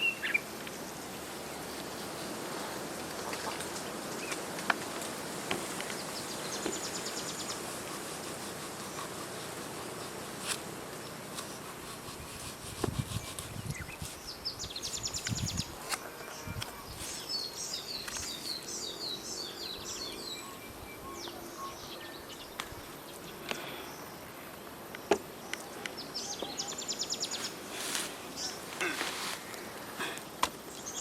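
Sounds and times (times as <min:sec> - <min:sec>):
faint steady hiss: 0:00.0 - 0:31.0
birds chirping: 0:13.0 - 0:31.0.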